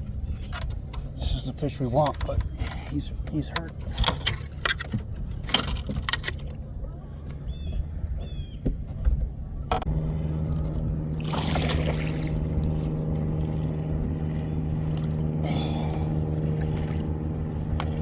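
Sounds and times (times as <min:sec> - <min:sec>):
boat motor humming: 0:00.0 - 0:18.0
rush of water: 0:11.2 - 0:13.0.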